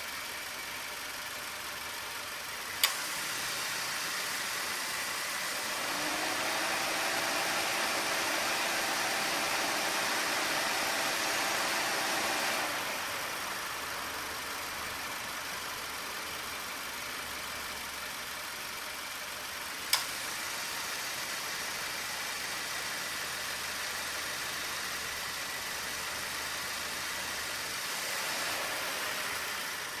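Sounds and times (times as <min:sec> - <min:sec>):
car engine idling: 0:00.0 - 0:11.8, 0:12.6 - 0:30.0
sharp click: 0:02.7 - 0:03.0, 0:19.9 - 0:20.2.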